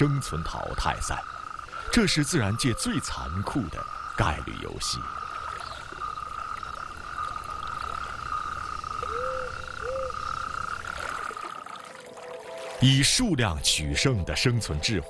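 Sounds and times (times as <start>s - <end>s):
short low frog calls: 0.0s - 11.6s
frogs trilling: 0.0s - 15.0s.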